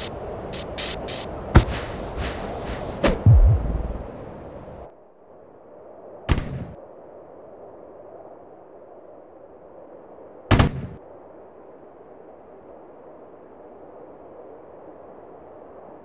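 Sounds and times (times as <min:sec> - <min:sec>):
low steady rumble: 0:02.0 - 0:04.9.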